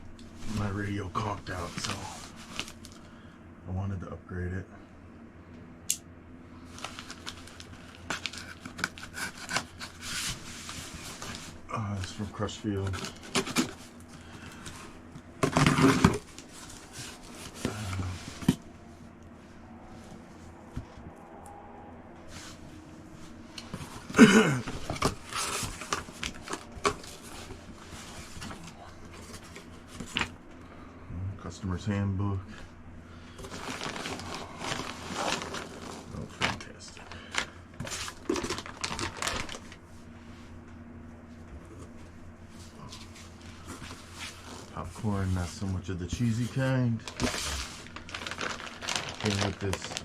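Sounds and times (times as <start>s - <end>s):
cardboard rustling and crinkling: 0.4s - 3.0s, 6.7s - 18.7s, 23.3s - 30.4s, 33.3s - 39.9s, 42.6s - 50.0s
packing rustling: 33.4s - 39.8s, 46.3s - 50.0s.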